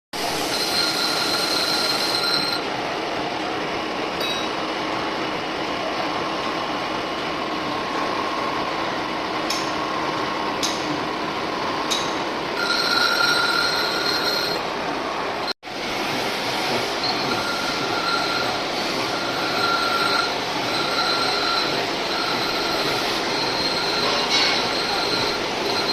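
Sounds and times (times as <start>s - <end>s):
lathe cutting: 0.2s - 2.6s, 12.6s - 14.7s, 15.9s - 25.9s
high-pitched squeal: 0.3s - 2.6s, 16.9s - 25.9s.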